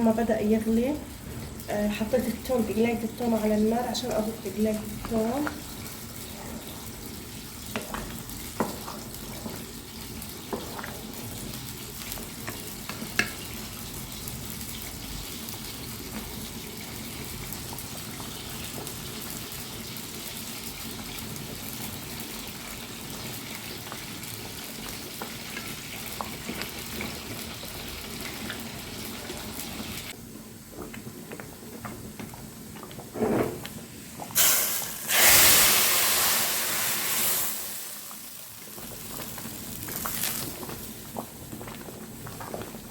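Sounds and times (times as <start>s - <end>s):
garlic sizzling in oil: 0.0s - 42.9s
loud hiss: 34.4s - 38.1s.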